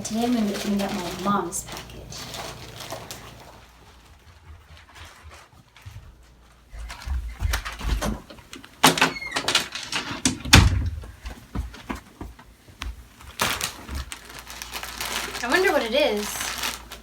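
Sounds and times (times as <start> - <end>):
package being handled and opened: 0.0 - 5.8, 13.2 - 17.0.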